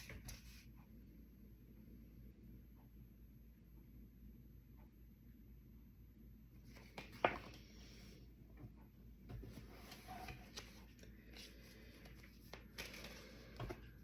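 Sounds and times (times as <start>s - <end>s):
cards shuffling: 9.4s - 14.0s.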